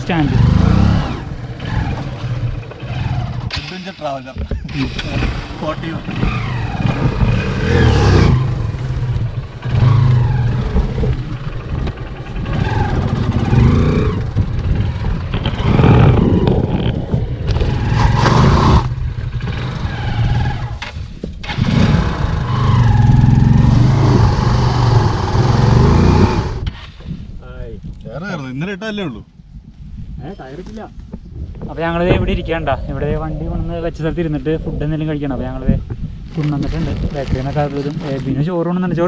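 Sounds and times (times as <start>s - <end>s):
motorcycle engine revving: 0.0s - 26.8s.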